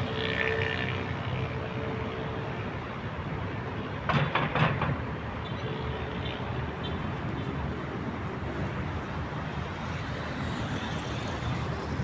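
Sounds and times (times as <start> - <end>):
road traffic hum: 0.0 - 12.0
sharp knocks clattering: 4.1 - 5.0.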